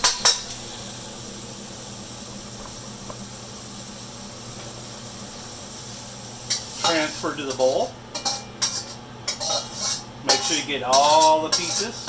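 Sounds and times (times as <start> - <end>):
food sizzling in wok: 0.0 - 12.0
metal spatula clinking on wok: 8.2 - 11.9.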